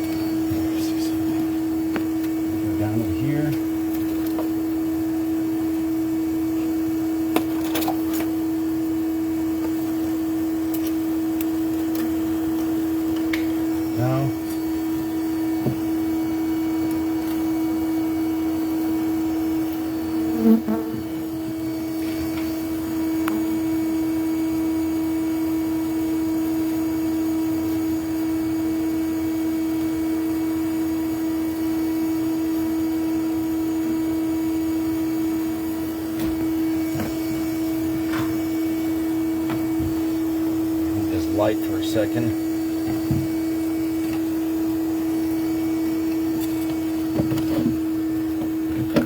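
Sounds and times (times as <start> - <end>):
vacuum motor humming: 0.0 - 49.0.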